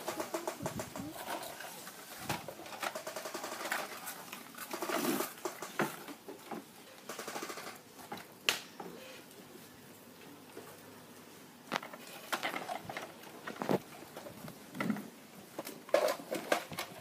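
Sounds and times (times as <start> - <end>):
plastic toy vehicles rattling: 0.0 - 7.8, 11.7 - 17.0.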